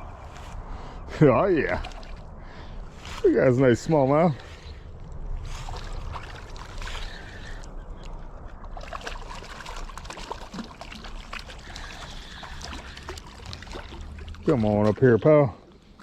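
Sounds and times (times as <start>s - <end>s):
creek water trickling: 1.2s - 16.0s
small clicks and splashes: 1.7s - 2.2s, 5.0s - 16.0s.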